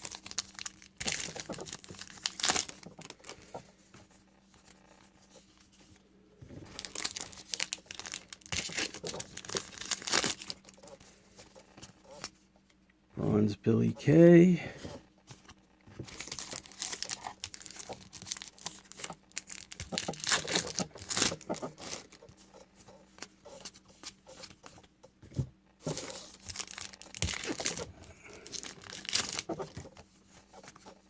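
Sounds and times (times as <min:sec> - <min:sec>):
card pack wrapper crinkling: 0:00.0 - 0:03.6, 0:06.7 - 0:11.0, 0:16.1 - 0:22.2, 0:25.8 - 0:31.0.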